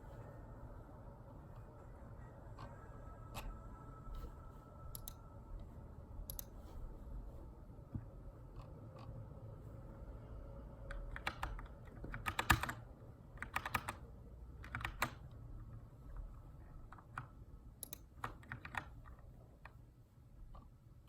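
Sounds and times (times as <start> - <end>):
typing on mechanical keyboard: 10.8 - 15.3, 16.9 - 19.8.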